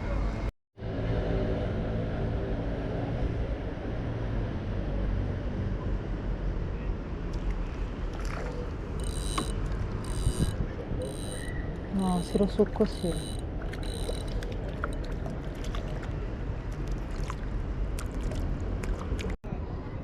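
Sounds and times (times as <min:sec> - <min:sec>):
motor running: 0:09.0 - 0:15.0
fishing reel clicking: 0:09.0 - 0:15.1.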